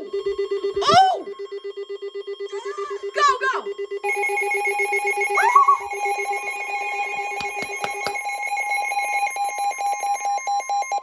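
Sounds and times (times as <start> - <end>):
fast-pulsing low alarm beep: 0.0 - 11.0
person shouting: 0.8 - 1.3, 2.5 - 3.7
steady high alert tone: 2.2 - 11.0.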